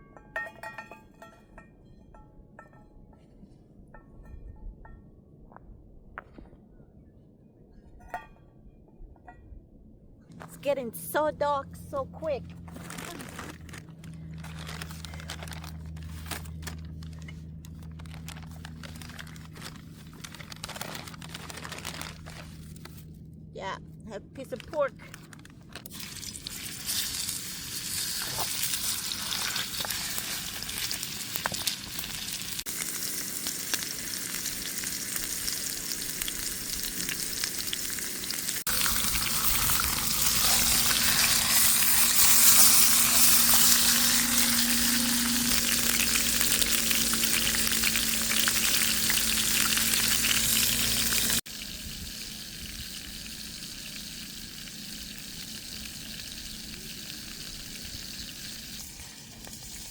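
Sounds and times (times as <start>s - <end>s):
pork sizzling in a pan: 25.9s - 59.9s.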